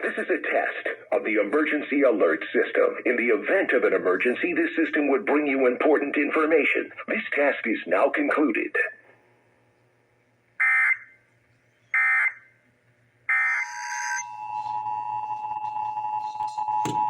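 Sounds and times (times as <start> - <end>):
harsh digital squawks: 13.3 - 15.0
two-tone attention signal: 13.3 - 17.0.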